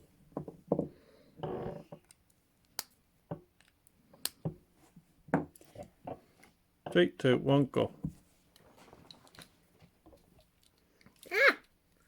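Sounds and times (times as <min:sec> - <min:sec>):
rustling: 0:08.2 - 0:10.2.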